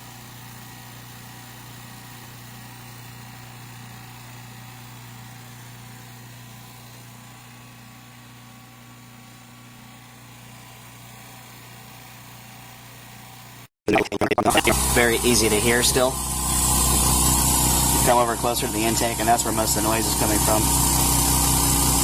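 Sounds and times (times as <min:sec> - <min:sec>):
air compressor humming: 0:14.7 - 0:22.0.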